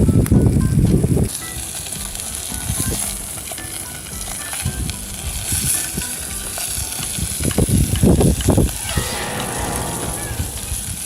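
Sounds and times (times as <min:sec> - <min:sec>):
food sizzling in a pan: 0:01.3 - 0:08.2, 0:08.8 - 0:11.0
loud low rumble: 0:08.9 - 0:11.0.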